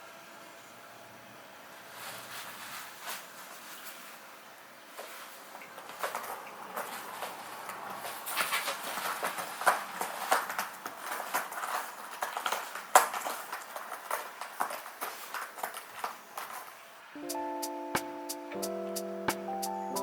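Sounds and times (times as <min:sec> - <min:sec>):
music: 0:17.2 - 0:20.0.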